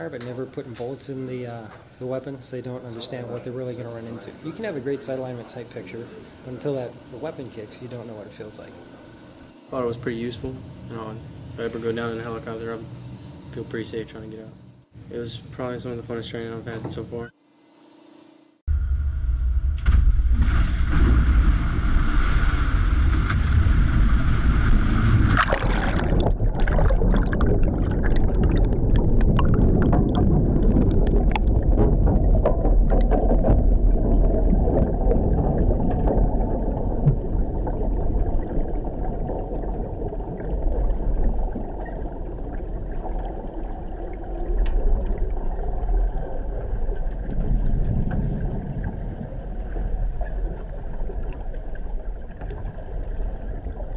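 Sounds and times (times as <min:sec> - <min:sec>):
muffled churning rumble: 0:00.0 - 0:17.3, 0:19.8 - 0:53.9
clicks and gurgles: 0:23.1 - 0:53.9.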